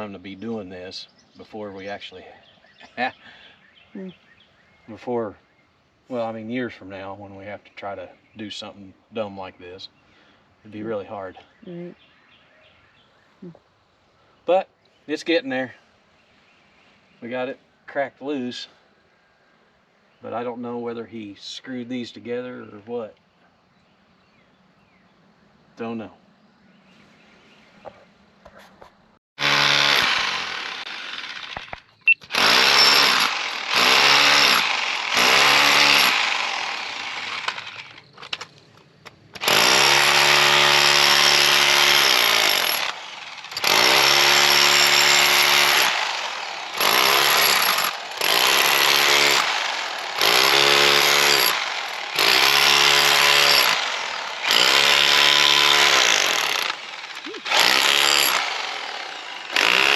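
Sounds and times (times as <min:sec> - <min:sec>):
hammer drill hammering concrete: 0:29.4 - 0:38.0, 0:39.4 - 0:59.9.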